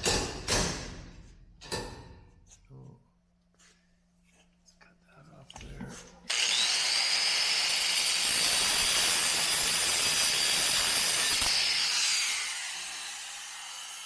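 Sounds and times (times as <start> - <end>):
rotary power tool whining: 6.3 - 14.0.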